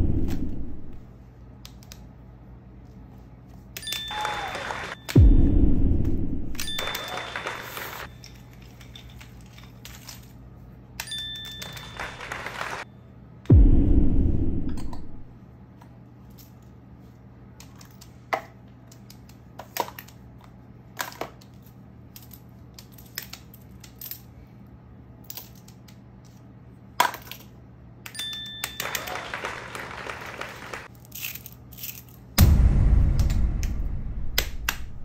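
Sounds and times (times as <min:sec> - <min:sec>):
steady low hum: 0:00.0 - 0:03.8, 0:05.0 - 0:06.8, 0:12.9 - 0:17.6, 0:32.3 - 0:35.0
loud thump: 0:05.2 - 0:06.6, 0:13.5 - 0:15.3, 0:32.4 - 0:35.0.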